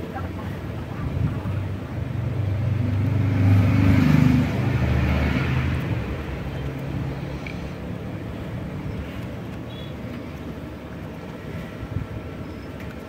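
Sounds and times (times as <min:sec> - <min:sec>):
vehicle passing by: 0:00.6 - 0:09.5.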